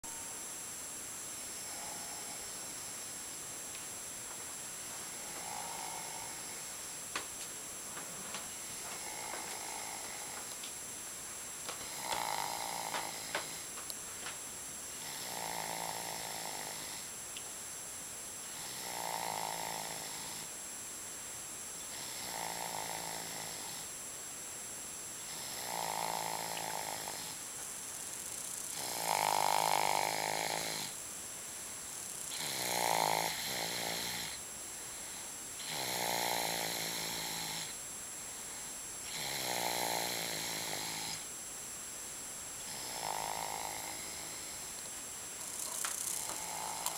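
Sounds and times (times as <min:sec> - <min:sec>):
loud buzzing snores: 0:01.5 - 0:03.0, 0:05.0 - 0:06.8, 0:08.6 - 0:10.6, 0:11.7 - 0:13.7, 0:15.0 - 0:17.1, 0:18.4 - 0:20.6, 0:21.8 - 0:24.0, 0:25.2 - 0:27.4, 0:28.4 - 0:31.0, 0:32.1 - 0:34.4, 0:35.0 - 0:37.8, 0:38.5 - 0:41.3, 0:42.6 - 0:44.8, 0:45.5 - 0:46.9.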